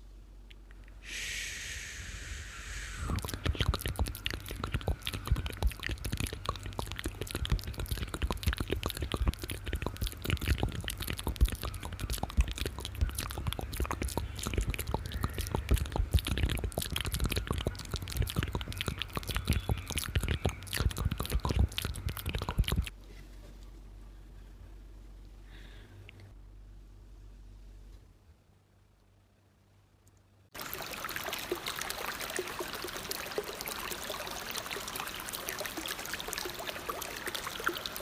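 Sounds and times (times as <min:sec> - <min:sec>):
crackly clicks and pops: 0:03.0 - 0:22.9.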